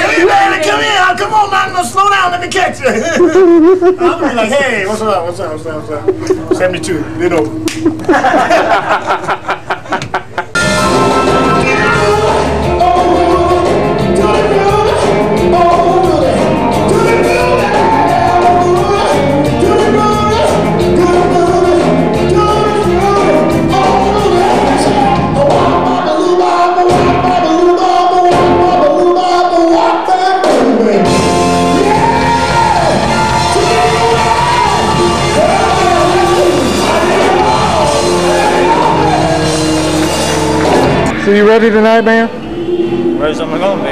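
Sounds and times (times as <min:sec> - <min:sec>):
band music with singer: 0:10.6 - 0:41.3.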